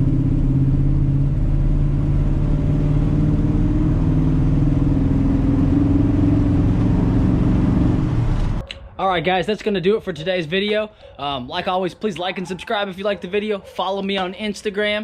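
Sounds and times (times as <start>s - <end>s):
engine running steadily: 0.0s - 8.6s.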